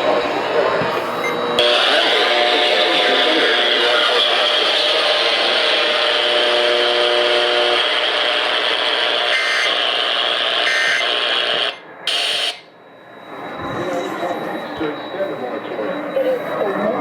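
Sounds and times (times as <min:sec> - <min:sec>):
radio static: 0:00.1 - 0:11.8.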